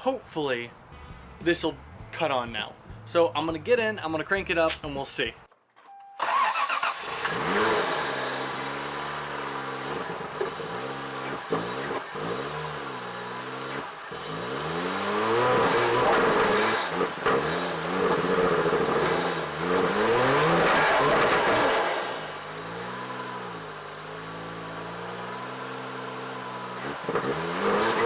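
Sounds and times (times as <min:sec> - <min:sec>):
car engine revving: 0:06.2 - 0:28.0.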